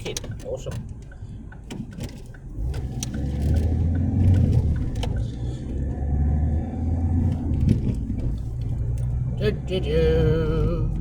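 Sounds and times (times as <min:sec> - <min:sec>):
car interior engine rumble: 0:00.0 - 0:11.0.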